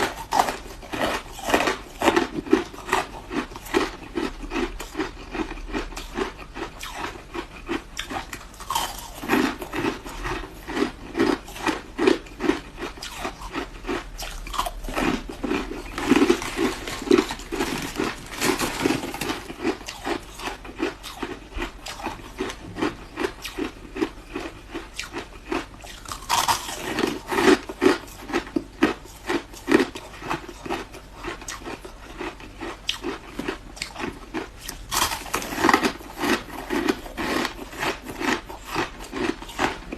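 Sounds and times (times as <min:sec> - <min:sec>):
person chewing and crunching ice: 0:00.0 - 0:39.9.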